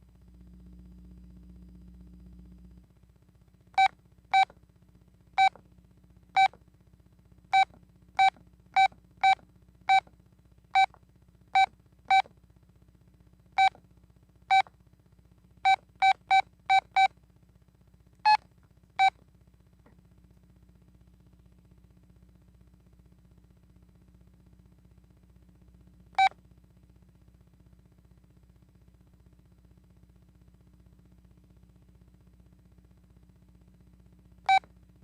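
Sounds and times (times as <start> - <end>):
phone keypad beeps: 3.8 - 4.5, 7.6 - 10.0, 11.6 - 12.2.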